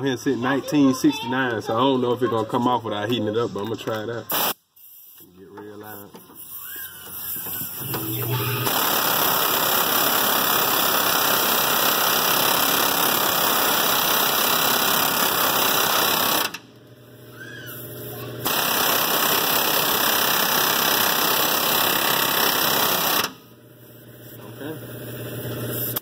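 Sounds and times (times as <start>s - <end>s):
pneumatic air hammer hammering: 6.0s - 16.6s, 18.4s - 23.4s, 25.7s - 26.0s.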